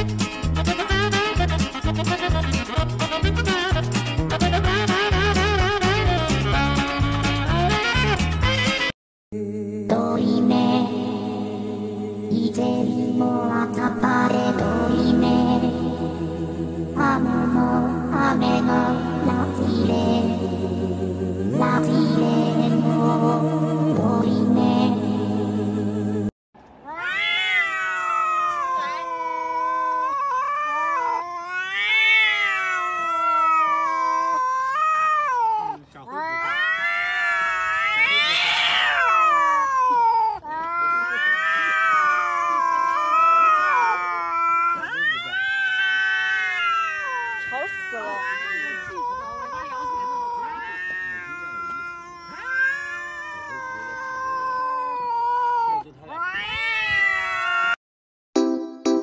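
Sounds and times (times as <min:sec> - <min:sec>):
cat yowling: 0:26.8 - 0:57.8.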